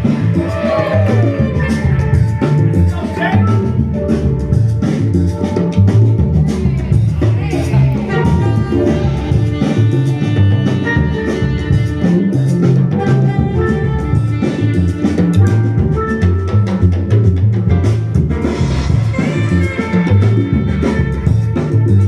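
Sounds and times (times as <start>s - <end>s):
loud dance music with drum beat: 0.0s - 5.5s, 6.3s - 12.6s, 18.1s - 22.0s.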